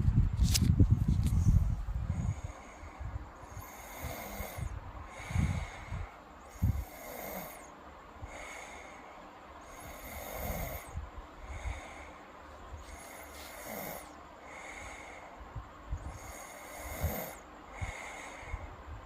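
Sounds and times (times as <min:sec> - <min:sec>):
person snoring: 0:03.4 - 0:07.7, 0:09.6 - 0:12.2, 0:12.8 - 0:15.2, 0:16.1 - 0:18.7.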